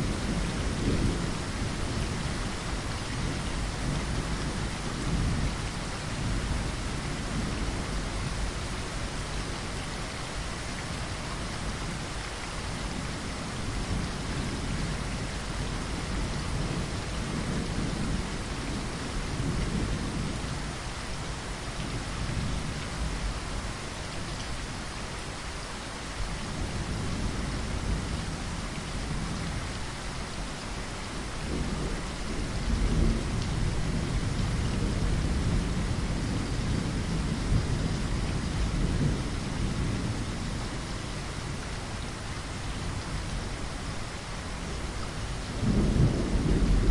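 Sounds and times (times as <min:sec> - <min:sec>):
rolling thunder rumbles: 0:00.0 - 0:08.0, 0:31.4 - 0:41.6, 0:45.4 - 0:46.9
rain pattering against a window: 0:00.0 - 0:46.9.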